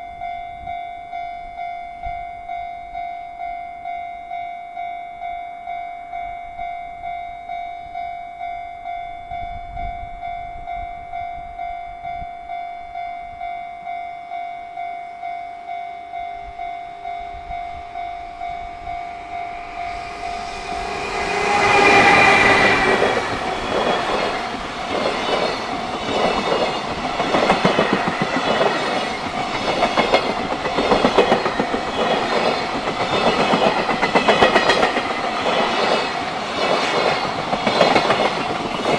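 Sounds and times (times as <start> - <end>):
level-crossing warning bell: 0.0 - 38.9
train rumbling past: 17.1 - 38.9
train wheels clacking: 17.6 - 38.9.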